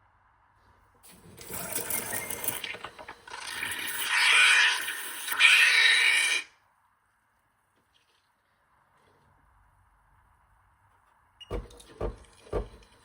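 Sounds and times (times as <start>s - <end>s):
espresso machine rattling and hissing: 1.1s - 4.2s.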